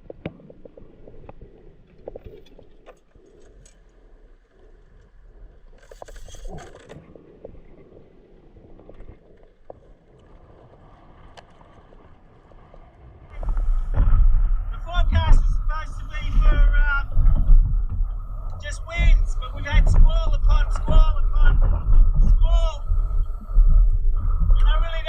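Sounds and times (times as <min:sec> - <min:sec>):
low steady background: 0:00.0 - 0:25.0
scraping: 0:13.3 - 0:25.0
gear knocking and rattling: 0:13.4 - 0:22.7.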